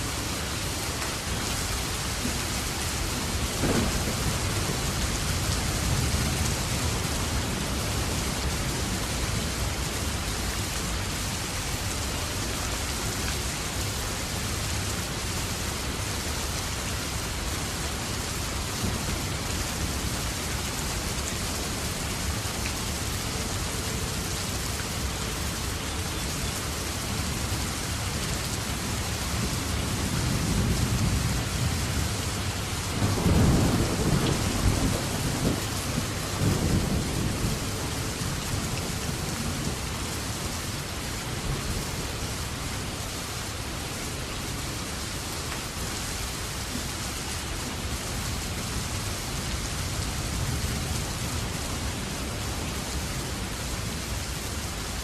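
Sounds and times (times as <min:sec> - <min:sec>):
heavy rain falling: 0:00.0 - 0:55.0
thunder rumbling: 0:03.2 - 0:07.1, 0:32.9 - 0:38.6.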